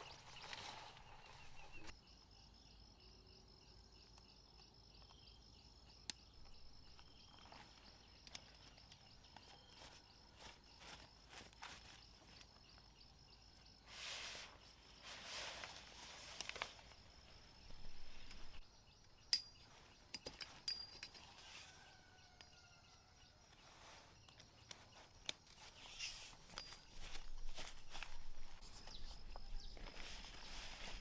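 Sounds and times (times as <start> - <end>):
rustling swishes on forest floor: 0.0 - 1.9, 13.8 - 18.6, 23.5 - 31.0.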